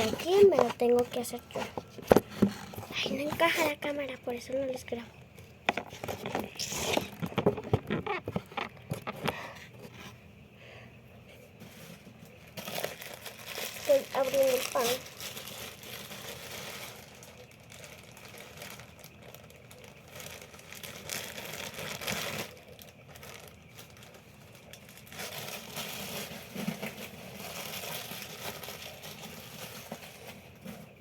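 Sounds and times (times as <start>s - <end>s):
plastic bag crinkling: 0.0s - 9.5s, 11.6s - 31.0s.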